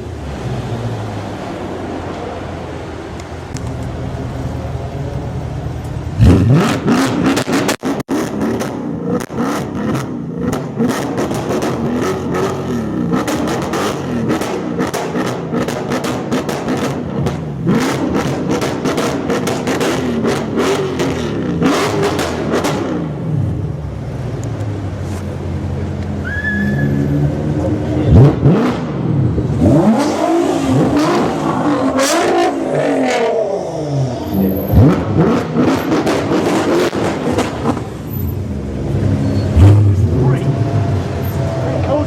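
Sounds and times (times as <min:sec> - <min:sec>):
car engine revving: 0:00.0 - 0:42.0.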